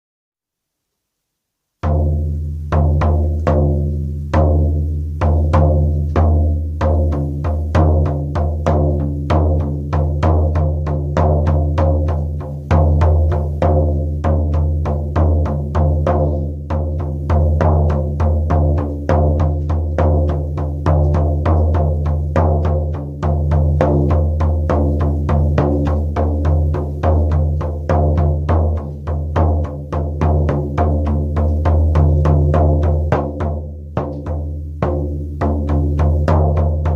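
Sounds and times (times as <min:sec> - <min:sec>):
frame drum booming: 0:01.8 - 0:36.9.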